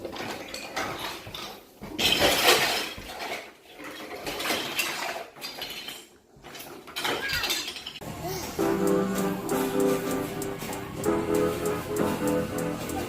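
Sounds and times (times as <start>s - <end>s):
plastic toys clattering: 0.0s - 8.0s.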